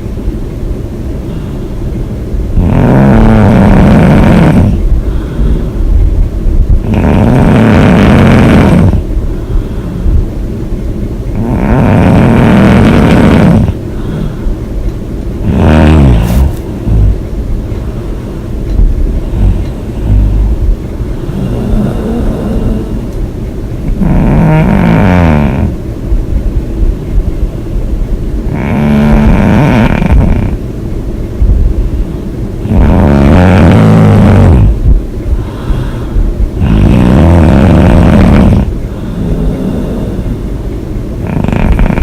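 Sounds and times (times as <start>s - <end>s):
woman snoring: 2.6s - 5.8s, 6.8s - 9.1s, 11.3s - 14.4s, 15.4s - 17.2s, 18.8s - 23.2s, 23.8s - 25.8s, 28.4s - 30.6s, 32.6s - 34.8s, 35.4s - 40.5s, 41.2s - 42.0s.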